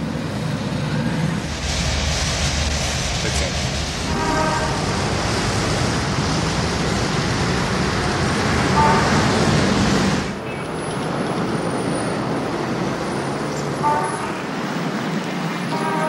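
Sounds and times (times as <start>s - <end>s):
street traffic: 0.0s - 16.0s.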